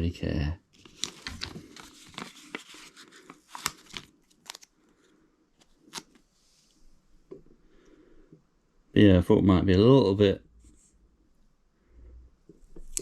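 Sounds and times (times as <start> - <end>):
sticker sheet rustling: 0.8 - 4.7.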